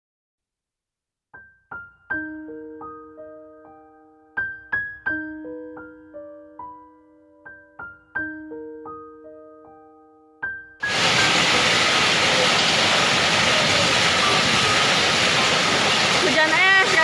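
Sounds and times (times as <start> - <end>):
gentle piano-like keyboard notes: 1.4 - 10.9.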